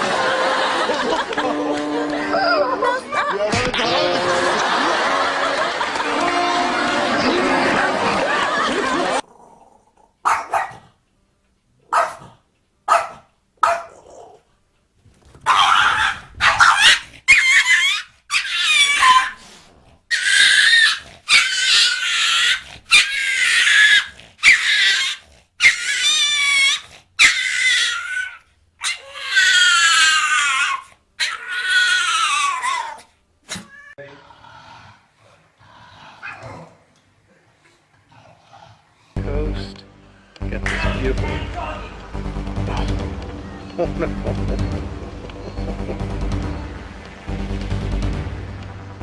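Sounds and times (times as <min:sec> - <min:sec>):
dog yelping: 0:10.2 - 0:10.8, 0:11.9 - 0:12.2, 0:12.9 - 0:14.3, 0:15.4 - 0:19.4, 0:20.1 - 0:34.0
dog whining howls: 0:20.1 - 0:33.0.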